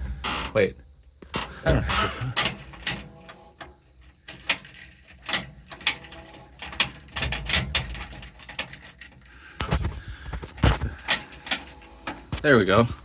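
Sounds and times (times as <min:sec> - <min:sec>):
heavy thumps: 0:09.5 - 0:11.2.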